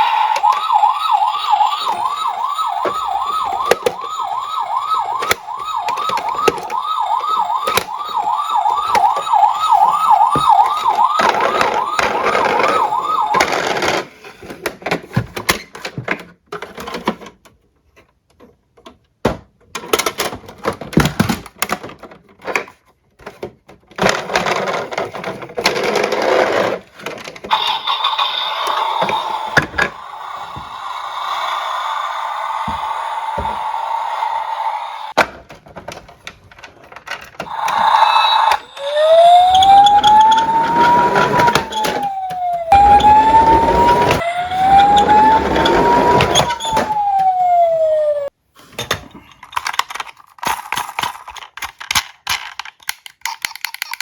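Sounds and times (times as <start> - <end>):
electronic siren wailing: 0.0 - 14.1, 27.5 - 35.2, 37.4 - 48.3
toy cars clicking and clacking: 0.0 - 30.4, 35.1 - 47.4, 48.8 - 54.0.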